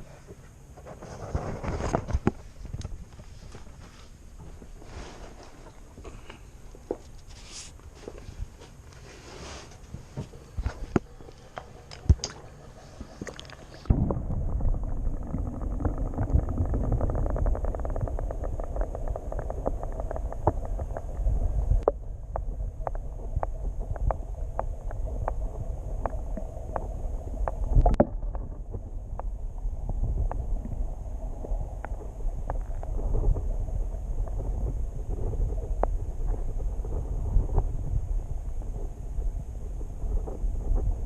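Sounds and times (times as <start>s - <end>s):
muffled underwater rumble: 10.0s - 41.0s.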